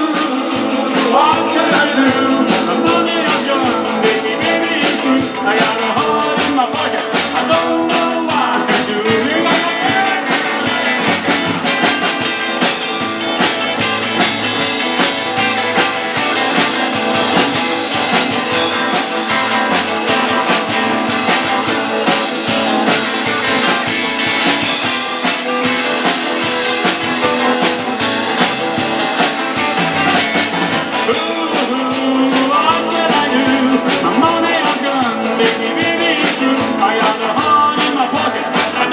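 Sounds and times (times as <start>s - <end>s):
person singing: 0.0s - 11.4s, 30.9s - 38.9s
guitar: 0.0s - 38.9s
rock music: 0.0s - 38.9s.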